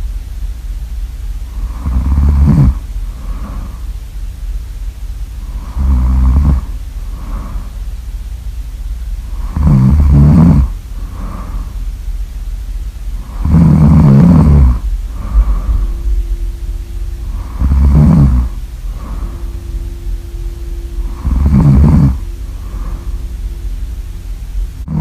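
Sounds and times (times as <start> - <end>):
loud rasping snores: 1.6 - 3.8, 5.4 - 7.8, 9.3 - 11.8, 13.2 - 16.0, 17.2 - 19.6, 21.0 - 23.2
soft breath out: 11.0 - 11.9, 15.1 - 23.8.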